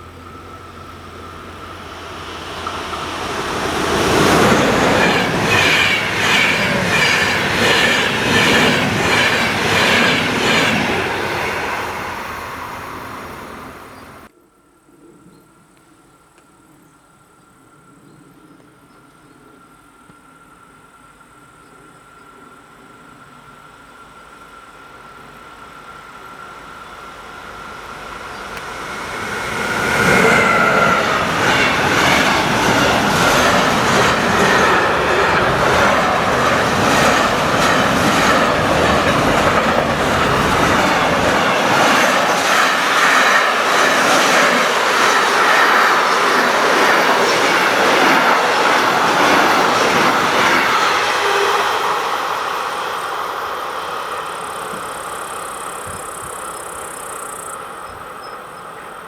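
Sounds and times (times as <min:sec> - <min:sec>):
train passing at speed: 0:00.0 - 0:14.3, 0:20.4 - 0:59.0
wheels clattering over rails: 0:00.0 - 0:14.3, 0:27.6 - 0:51.2.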